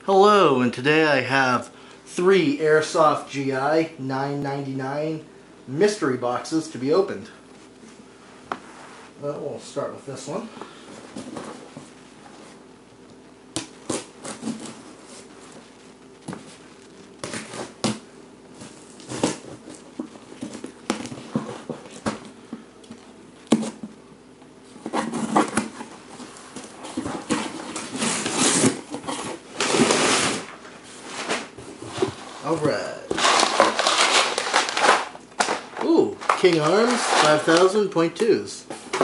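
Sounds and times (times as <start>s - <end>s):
crinkly rustling of packaging: 31.3s - 38.1s.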